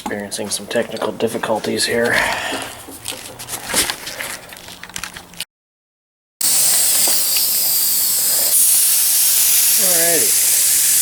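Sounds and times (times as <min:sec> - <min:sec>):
spray gun hissing: 0:06.4 - 0:11.0.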